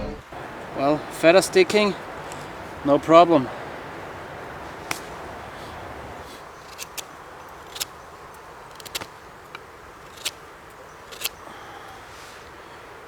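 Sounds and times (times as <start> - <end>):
steady outdoor hiss: 0.0 - 13.0
knife shaving wood: 10.0 - 10.4.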